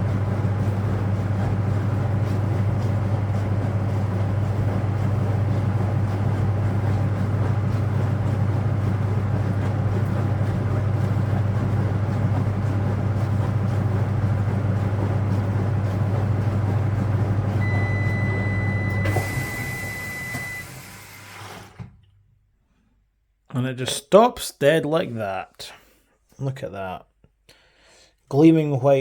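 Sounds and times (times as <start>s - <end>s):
washing machine spin motor hum: 0.0s - 22.2s.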